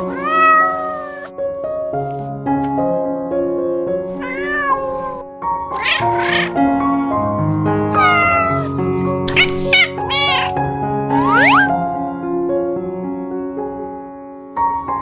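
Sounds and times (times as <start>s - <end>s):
cat meowing: 0.0s - 1.3s, 4.1s - 6.6s, 7.9s - 10.6s.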